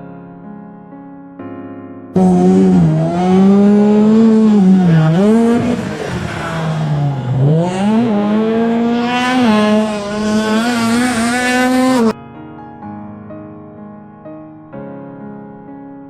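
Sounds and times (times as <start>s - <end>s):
piano music: 0.0s - 16.0s
race car engine revving: 2.2s - 12.2s.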